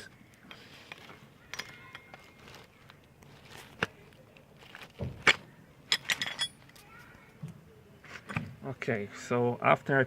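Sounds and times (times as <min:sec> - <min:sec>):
metal clicks of tools and nuts: 0:01.5 - 0:02.2, 0:05.9 - 0:06.8.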